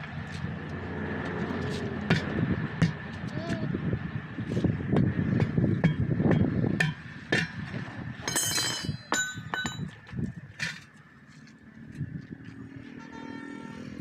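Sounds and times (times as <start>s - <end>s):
metal tools knocking and clinking: 8.2s - 10.0s.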